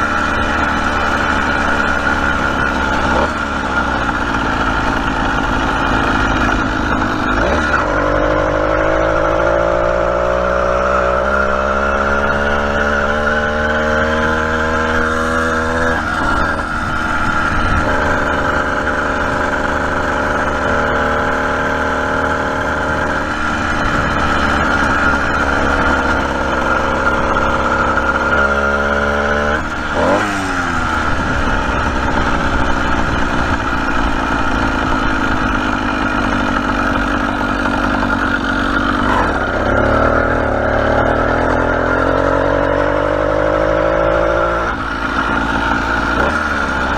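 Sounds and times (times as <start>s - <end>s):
motorized bicycle engine running: 0.0s - 13.4s, 14.9s - 42.8s.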